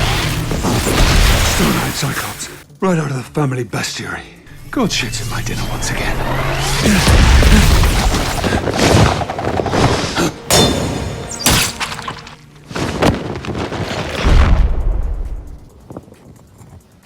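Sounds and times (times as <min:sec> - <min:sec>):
film music score: 0:00.0 - 0:17.0
heavy crashes and shattering: 0:06.6 - 0:14.6.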